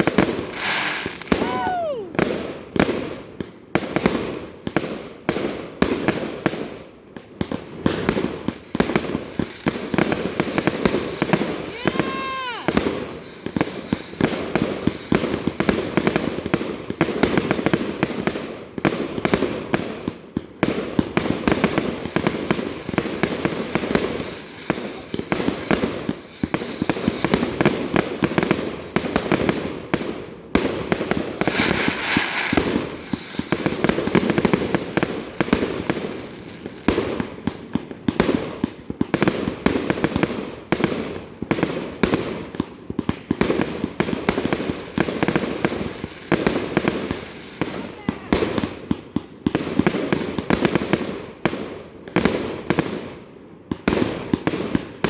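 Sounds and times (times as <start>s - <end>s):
fireworks hissing: 0.0s - 2.2s, 8.5s - 16.3s, 21.4s - 29.6s, 31.0s - 37.1s, 44.4s - 48.1s
fireworks banging and crackling: 0.0s - 55.0s.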